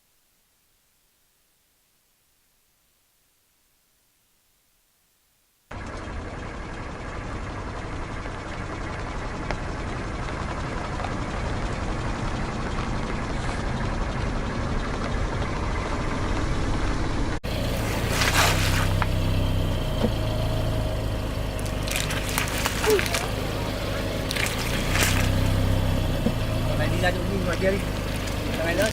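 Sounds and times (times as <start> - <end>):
car engine idling: 5.7 - 28.9
car engine running: 5.7 - 28.9
road and tyre noise: 5.7 - 28.9
objects cracking under tyres: 17.5 - 20.4, 21.2 - 26.8.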